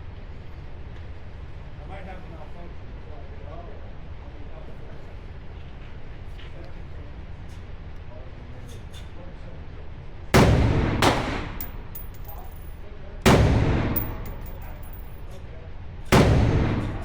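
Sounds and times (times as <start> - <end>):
gunshots with echo: 10.4 - 12.6, 13.3 - 15.2, 16.2 - 17.0
light metallic clinks: 11.6 - 12.8, 14.0 - 15.2.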